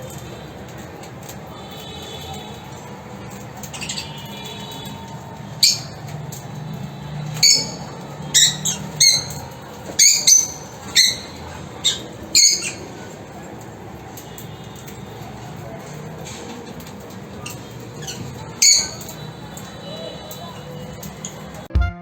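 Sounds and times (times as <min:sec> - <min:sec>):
lovebirds squawking: 0:00.0 - 0:21.7
faint chirping: 0:02.2 - 0:21.7.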